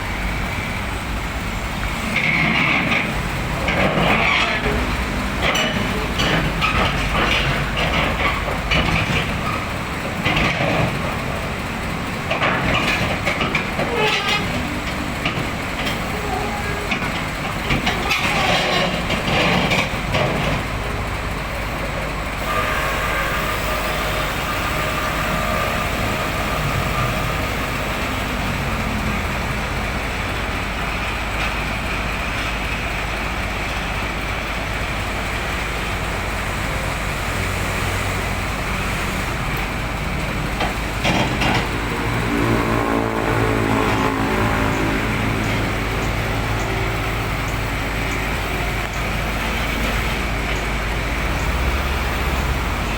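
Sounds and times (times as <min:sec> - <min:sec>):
bulldozer diesel engine running: 0:00.0 - 0:52.9.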